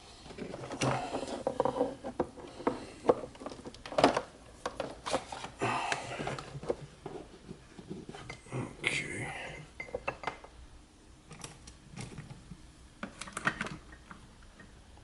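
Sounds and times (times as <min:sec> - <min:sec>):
power cord handling clicks and knocks: 0:00.4 - 0:05.3.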